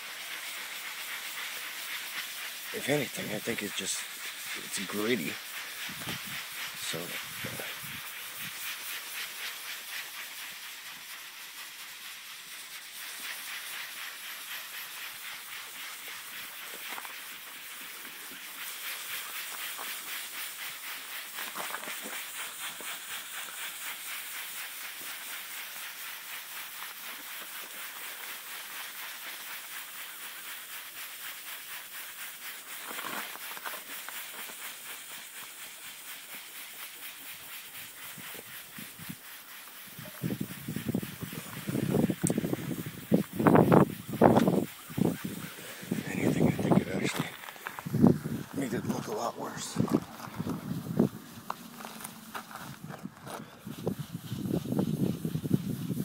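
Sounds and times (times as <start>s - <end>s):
cloth scrubbing plastic lens: 26.2s - 56.0s.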